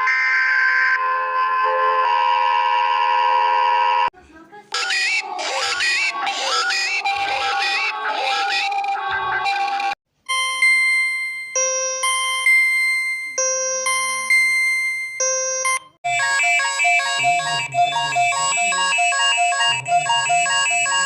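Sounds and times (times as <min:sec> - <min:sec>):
electronic alert beeps: 0:10.3 - 0:21.0
electronic ringtone melody: 0:10.3 - 0:21.0.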